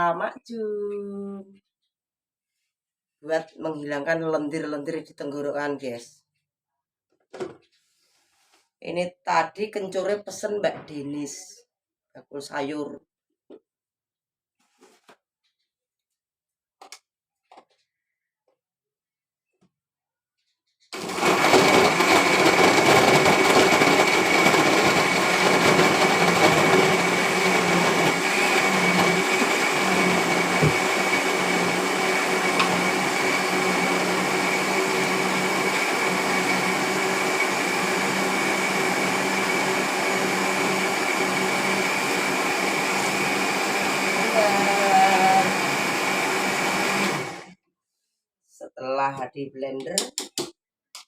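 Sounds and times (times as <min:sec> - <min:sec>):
blender whining: 0:21.0 - 0:47.5.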